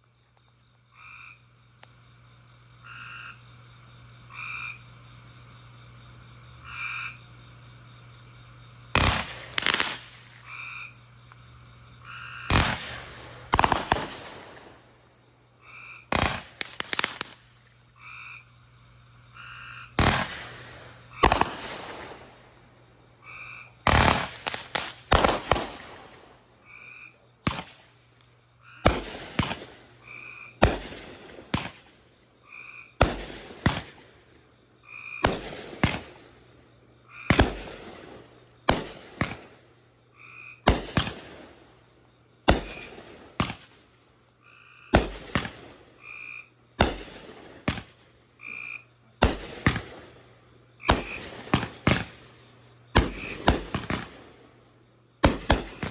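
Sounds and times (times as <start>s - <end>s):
short croaking calls: 0.8s - 1.7s, 2.7s - 7.8s, 9.0s - 14.0s, 15.6s - 17.2s, 17.9s - 20.3s, 23.2s - 25.8s, 26.6s - 27.8s, 28.6s - 30.9s, 32.4s - 33.0s, 34.8s - 36.1s, 37.0s - 37.7s, 40.1s - 40.8s, 44.3s - 46.6s, 48.4s - 49.0s
fireworks bangs with crackling: 8.1s - 10.5s, 12.4s - 15.0s, 16.1s - 17.6s, 20.0s - 22.6s, 23.8s - 26.4s, 27.4s - 30.0s, 30.6s - 32.1s, 33.0s - 34.4s, 35.2s - 36.6s, 37.3s - 39.7s, 40.6s - 41.8s, 42.4s - 44.0s, 44.9s - 46.0s, 46.8s - 48.2s, 49.2s - 54.5s, 55.2s - 55.9s.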